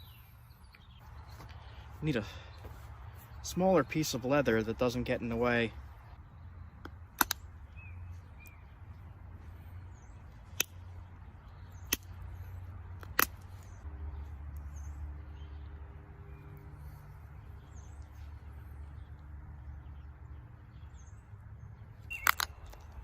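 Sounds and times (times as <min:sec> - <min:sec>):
stone flintknapping clicks: 0:06.8 - 0:07.5, 0:10.5 - 0:10.8, 0:11.8 - 0:12.2, 0:13.0 - 0:13.7, 0:22.1 - 0:23.0.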